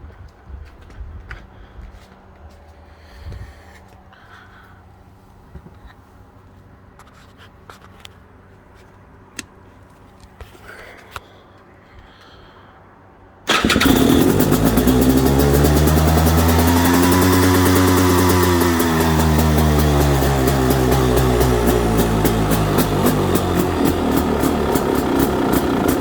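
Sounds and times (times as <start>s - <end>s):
heavy breathing: 2.7s - 4.9s
motorcycle engine running: 13.5s - 26.0s.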